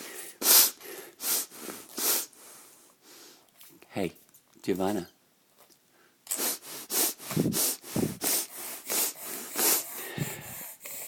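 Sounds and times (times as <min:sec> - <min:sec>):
child sucking freezer pop: 0:00.2 - 0:02.3, 0:06.3 - 0:11.0.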